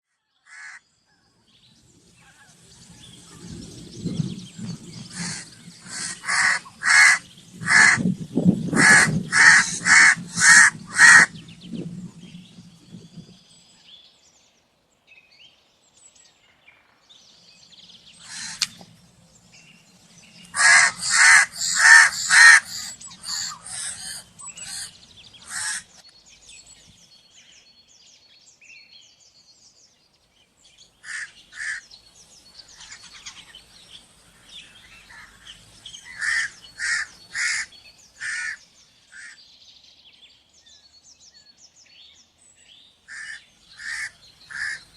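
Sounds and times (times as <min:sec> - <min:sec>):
crow cawing: 0:00.5 - 0:00.8, 0:05.1 - 0:08.0, 0:08.8 - 0:11.3, 0:18.2 - 0:18.7, 0:20.6 - 0:25.9, 0:31.0 - 0:31.8, 0:36.1 - 0:39.4, 0:43.1 - 0:44.8.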